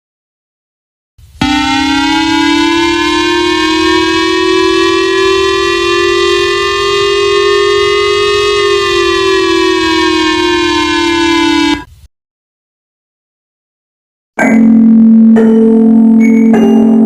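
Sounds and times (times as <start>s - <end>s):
buzzy alarm tone: 1.4s - 11.9s, 14.5s - 17.0s.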